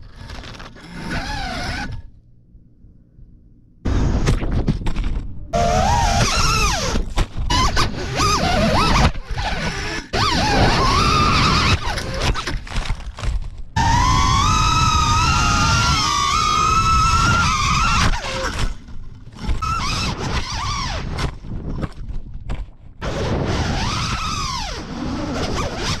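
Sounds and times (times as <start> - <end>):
drone motors whining: 0.0 - 2.2, 3.8 - 13.0, 13.8 - 21.4.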